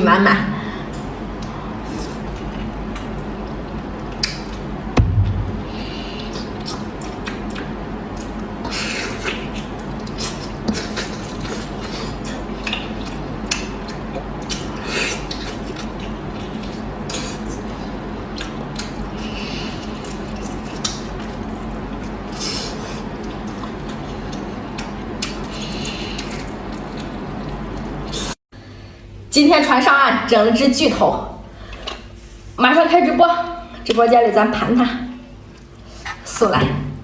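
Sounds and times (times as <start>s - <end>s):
wet chewing: 6.1s - 28.4s.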